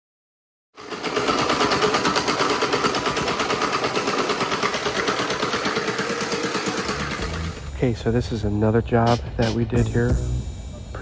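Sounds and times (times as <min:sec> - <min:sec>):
small motor rattling: 0:00.8 - 0:07.8.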